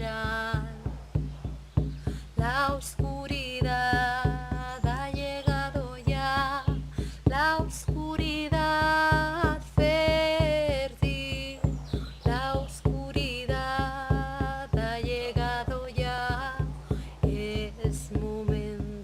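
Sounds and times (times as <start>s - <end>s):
person singing with vibrato: 2.1s - 19.0s.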